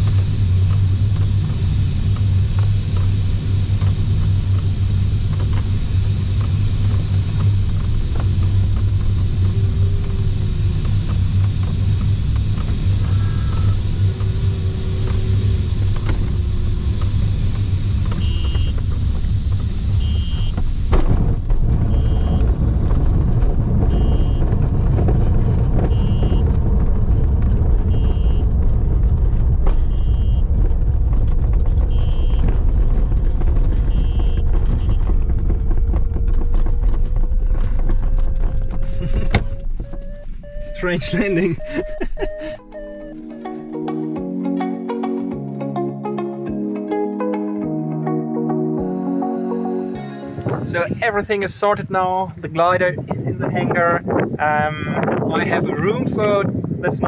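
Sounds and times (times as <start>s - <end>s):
low steady cockpit rumble: 0.0s - 43.7s
short high electronic beeps: 39.2s - 43.5s.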